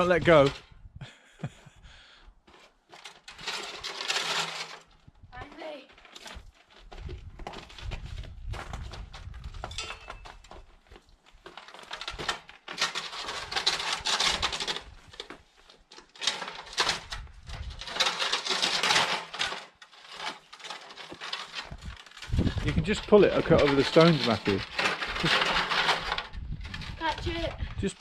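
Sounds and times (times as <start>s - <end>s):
sledge scraping over snow and stones: 0.0s - 0.7s, 16.2s - 28.0s.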